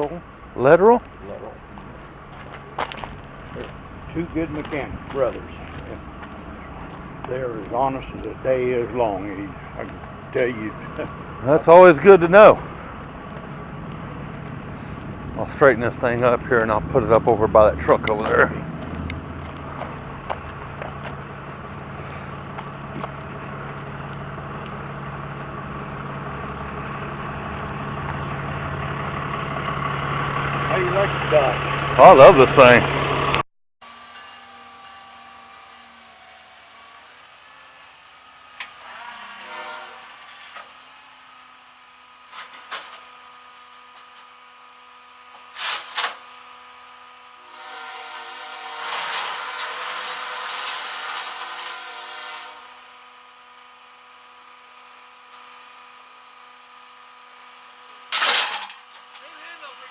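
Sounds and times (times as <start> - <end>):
truck engine running low: 0.0 - 38.8
mechanical whine: 0.0 - 59.9.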